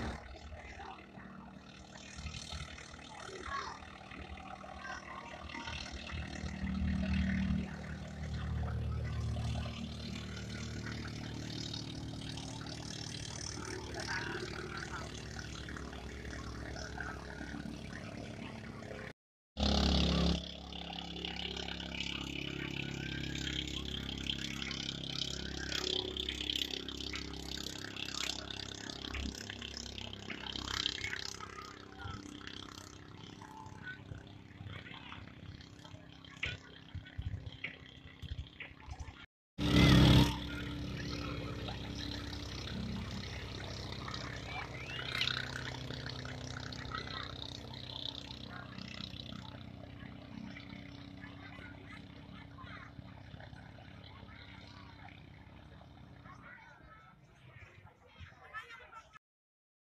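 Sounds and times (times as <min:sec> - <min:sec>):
racing boat engines: 0:00.0 - 0:59.2.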